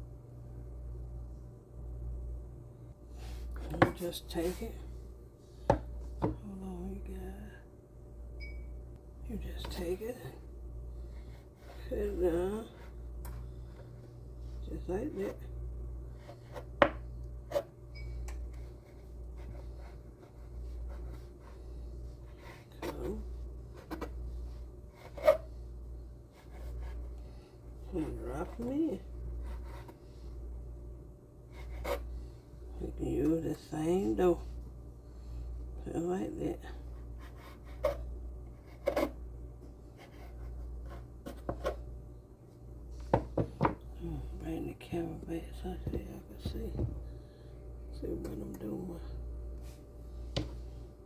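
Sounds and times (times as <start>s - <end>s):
steady low hum: 0.0s - 51.0s
knock on kitchen counter: 16.8s - 17.0s, 43.1s - 43.8s, 46.8s - 47.0s.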